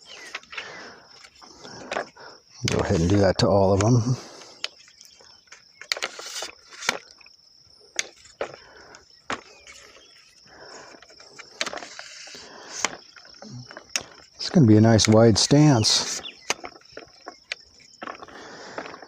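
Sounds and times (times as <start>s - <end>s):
handling rustle: 0.0s - 19.0s
tripod leg clamps clicking: 4.6s - 7.3s.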